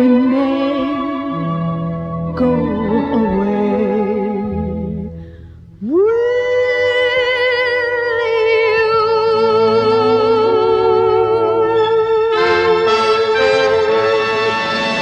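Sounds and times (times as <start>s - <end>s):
orchestra chords: 11.8s - 15.0s.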